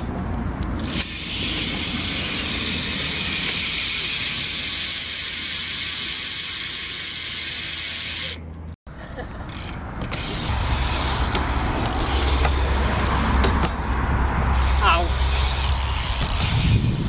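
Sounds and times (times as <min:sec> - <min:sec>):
bicycle hub ratchet buzzing: 0:00.8 - 0:08.4, 0:09.5 - 0:13.5, 0:14.3 - 0:17.0.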